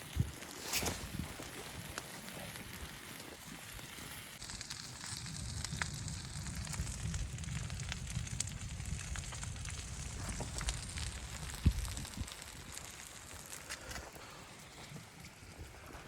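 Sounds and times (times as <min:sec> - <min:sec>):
wood fire crackling and popping: 0:00.0 - 0:16.0
steady low rumble: 0:05.2 - 0:13.1.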